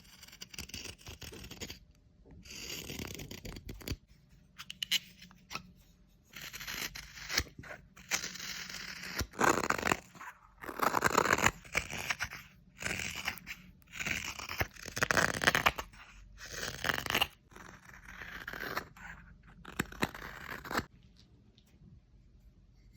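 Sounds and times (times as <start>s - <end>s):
knife shaving wood: 2.5s - 4.0s, 6.3s - 20.9s.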